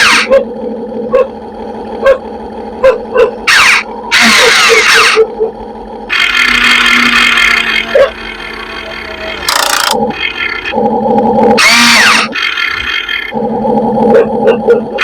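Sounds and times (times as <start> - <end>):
small dog barking: 0.0 - 0.5, 1.1 - 1.3, 2.0 - 2.2, 2.8 - 3.4, 7.9 - 8.2, 14.1 - 15.0
toy excavator motors whirring: 0.0 - 1.4, 2.8 - 15.0.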